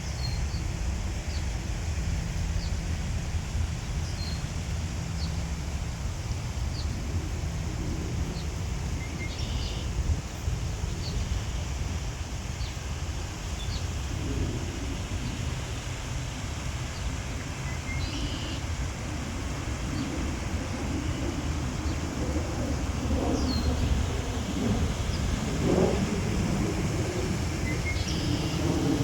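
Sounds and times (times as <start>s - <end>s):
wind buffeting microphone: 0.0s - 29.0s
faint bird chirps: 17.9s - 18.6s, 27.7s - 28.6s.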